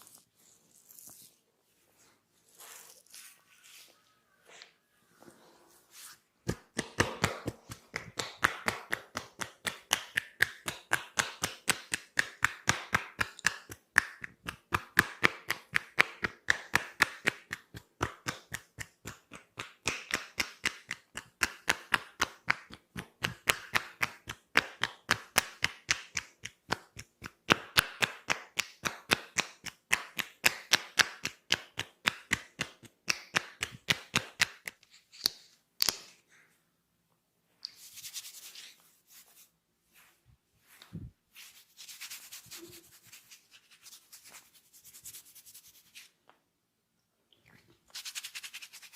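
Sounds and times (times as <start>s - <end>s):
hands slapping on body: 6.4s - 36.1s.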